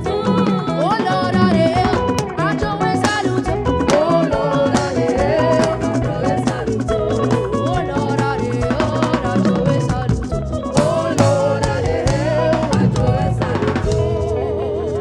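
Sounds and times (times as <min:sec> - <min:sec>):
drum kit beat: 0:00.0 - 0:15.0
gospel band music: 0:00.0 - 0:15.0.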